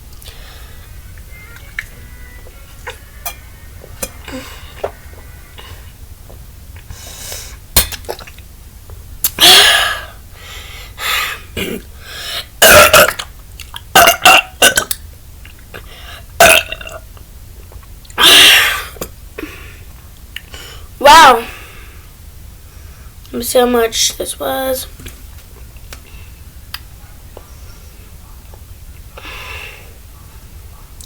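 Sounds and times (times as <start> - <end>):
person burping loudly: 12.6 - 13.3, 16.4 - 17.0.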